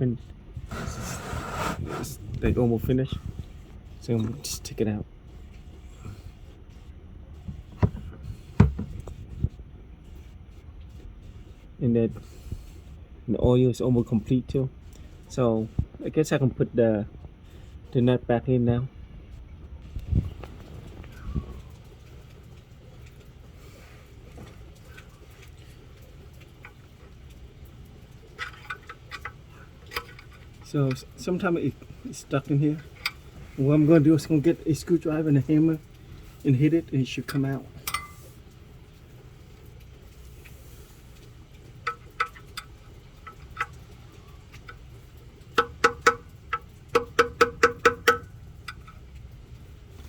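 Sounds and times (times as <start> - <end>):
light clicks of drain plug: 41.2 - 49.3
hammer striking screwdriver: 45.6 - 46.3, 47.0 - 48.3.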